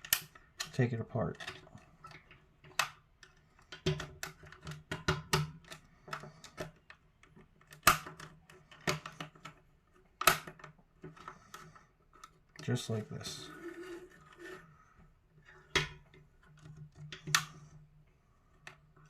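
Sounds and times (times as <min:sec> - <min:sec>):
plastic clicks and snaps: 0:00.0 - 0:11.6, 0:15.7 - 0:17.8.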